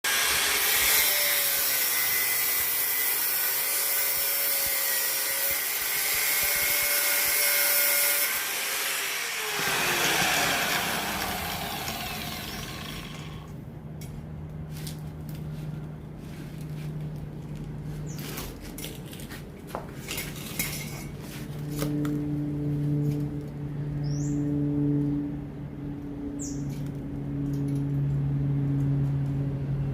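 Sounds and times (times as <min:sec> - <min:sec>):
power tool running: 0:00.0 - 0:13.6.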